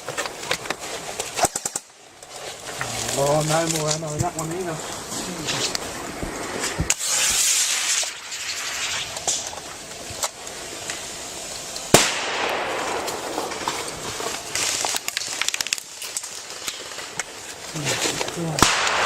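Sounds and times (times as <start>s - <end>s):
hiss: 4.7s - 19.0s
firecracker bangs: 11.9s - 15.3s, 18.5s - 19.0s
small pops: 11.9s - 19.0s.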